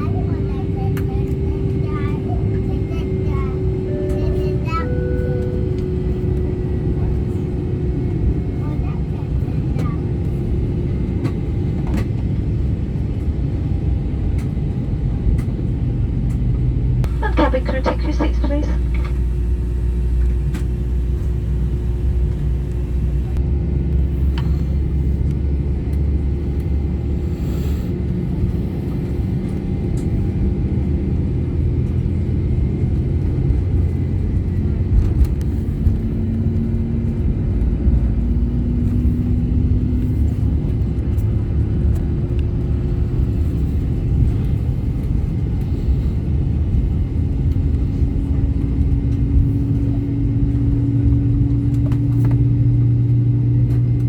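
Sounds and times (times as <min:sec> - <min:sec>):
jet engine rumble in cabin: 0:00.0 - 0:54.0
faint engine tone rising in pitch: 0:03.6 - 0:07.3.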